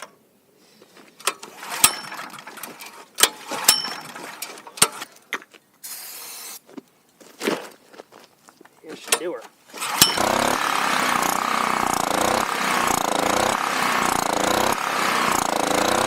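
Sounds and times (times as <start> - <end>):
metallic clicks and clanks: 1.2 - 5.5
short hiss: 5.8 - 6.6.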